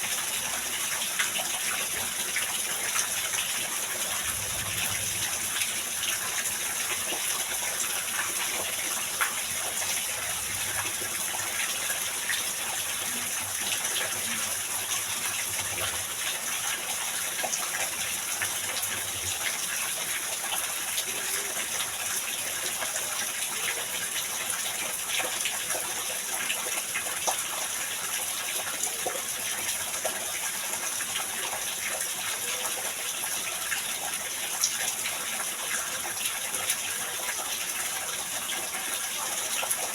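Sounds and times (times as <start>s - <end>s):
heavy rain pouring: 2.9s - 16.2s.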